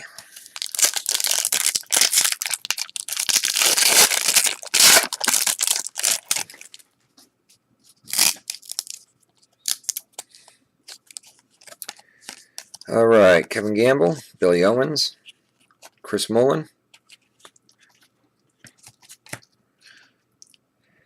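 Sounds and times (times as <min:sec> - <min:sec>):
wrapper tearing and crinkling: 0:00.4 - 0:06.8, 0:08.1 - 0:09.0, 0:09.6 - 0:10.2.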